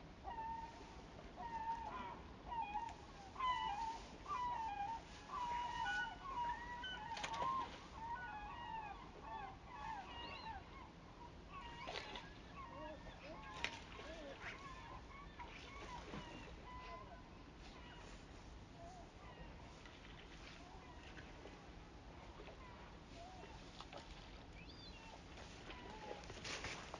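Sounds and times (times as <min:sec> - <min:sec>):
flock of birds calling: 0:01.4 - 0:18.2, 0:24.6 - 0:26.9.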